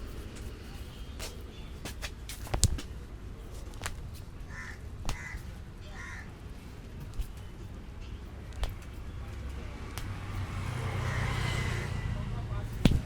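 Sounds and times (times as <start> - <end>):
low traffic rumble: 0.0 - 13.0
crow cawing: 4.5 - 6.4, 11.0 - 11.9.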